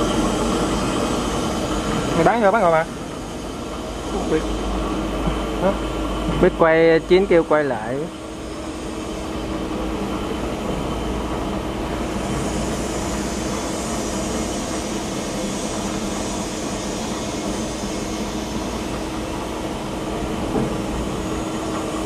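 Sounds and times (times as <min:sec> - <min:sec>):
lathe machine hum: 0:00.0 - 0:22.0
machine hiss: 0:00.0 - 0:22.0.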